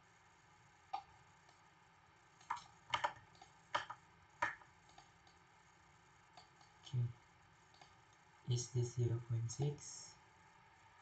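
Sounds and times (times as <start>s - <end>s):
mouse and keyboard clicks: 2.4s - 5.4s.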